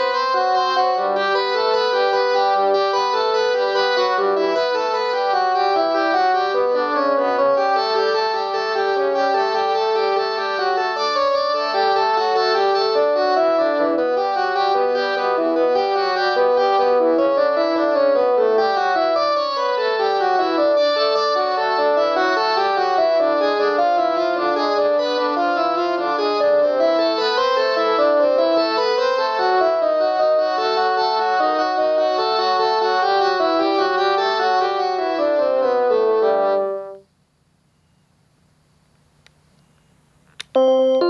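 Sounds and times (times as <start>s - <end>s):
cordless phone melody ringtone: 39.7s - 41.0s.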